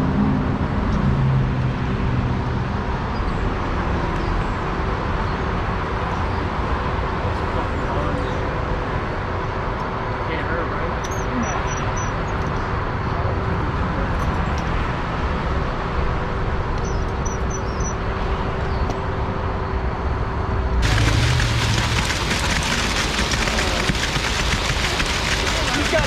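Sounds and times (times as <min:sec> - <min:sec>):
diesel engine running: 0:20.8 - 0:26.0.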